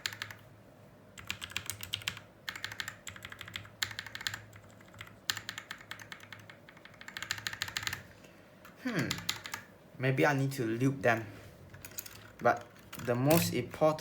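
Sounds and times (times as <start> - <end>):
mechanical keyboard typing: 0.0 - 0.4, 1.2 - 8.1, 9.0 - 9.7, 11.7 - 13.6.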